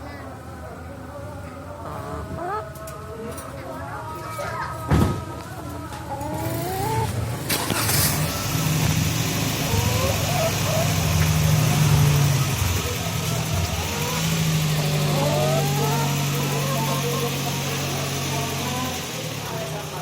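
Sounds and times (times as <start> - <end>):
chickens clucking: 1.5 - 4.6, 5.5 - 20.0
vehicle engine running: 5.6 - 20.0.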